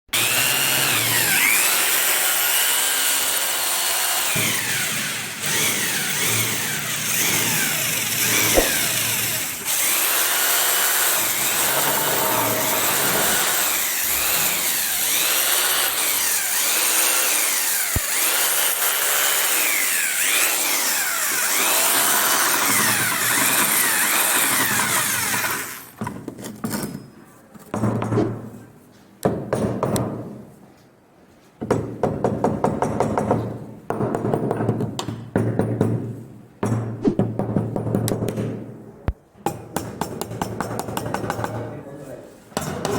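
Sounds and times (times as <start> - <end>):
power tool cutting wood: 0.1 - 26.0.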